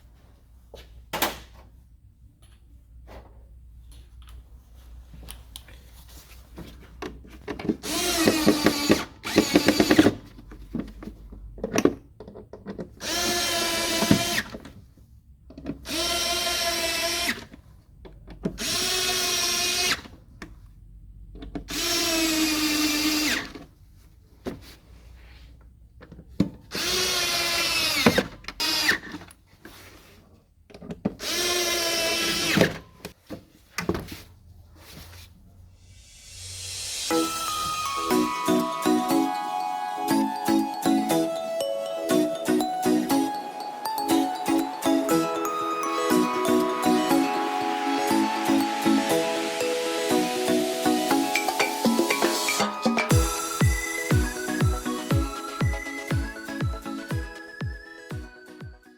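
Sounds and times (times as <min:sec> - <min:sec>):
cordless drill whining: 0:07.8 - 0:10.2, 0:13.0 - 0:14.5, 0:15.9 - 0:17.5, 0:18.6 - 0:20.0, 0:26.7 - 0:29.0, 0:31.2 - 0:32.7.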